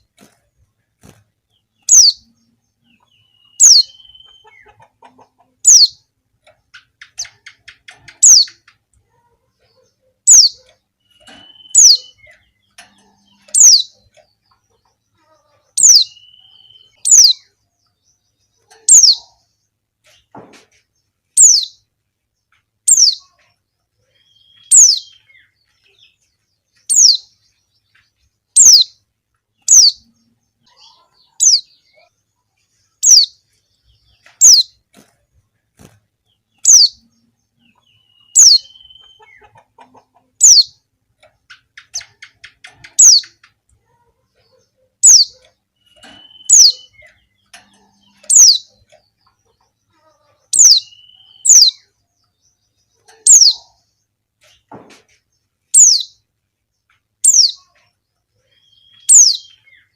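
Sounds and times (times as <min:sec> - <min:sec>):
soft bird chirps: 0:00.0 - 0:59.9
faint bird trill: 0:01.8 - 0:06.0, 0:06.7 - 0:17.6, 0:22.9 - 0:26.2, 0:36.6 - 0:40.8, 0:44.4 - 0:52.0, 0:55.7 - 0:56.2, 0:57.2 - 0:59.9
bird calling with high notes: 0:10.3 - 0:12.4, 0:37.9 - 0:39.3, 0:45.0 - 0:47.2.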